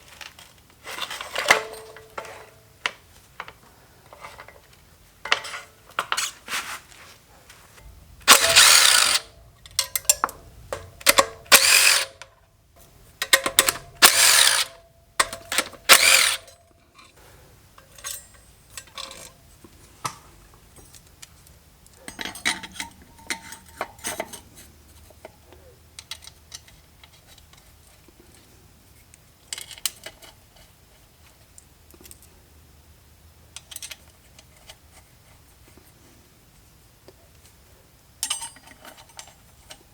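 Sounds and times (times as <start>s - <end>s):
metal tools clinking: 0.9s - 2.6s, 8.3s - 12.2s, 13.2s - 17.1s, 17.8s - 19.4s, 22.0s - 24.5s, 38.2s - 39.9s
ratchet wrench clicking: 8.3s - 12.2s, 13.2s - 16.5s.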